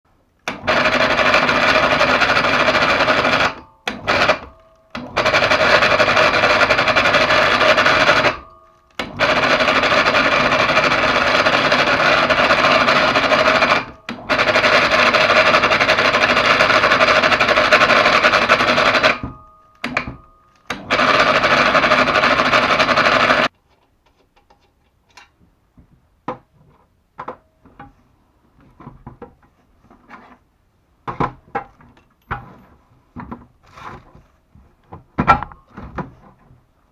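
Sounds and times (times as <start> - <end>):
electric hoist motor running: 0.5 - 19.2, 20.7 - 23.5.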